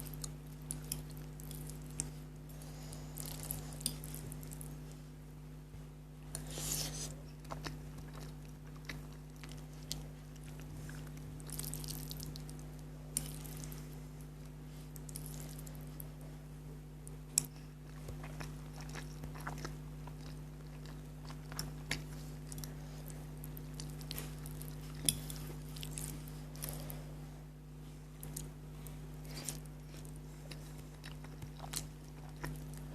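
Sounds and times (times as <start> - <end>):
person chewing noodles: 0.0 - 4.8, 6.3 - 16.3, 17.1 - 27.0, 28.0 - 32.9.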